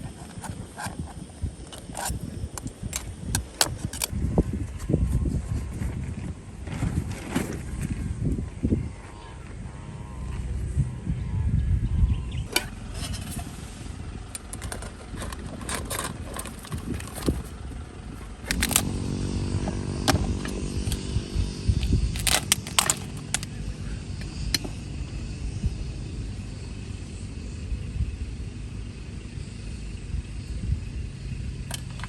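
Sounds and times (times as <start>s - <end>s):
engine running steadily: 0.0s - 32.0s
clicks and knocks: 22.2s - 23.5s.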